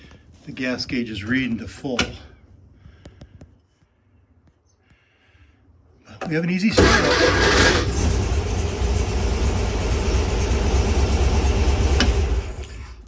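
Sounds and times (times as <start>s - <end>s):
engine starting and running: 6.7s - 13.0s.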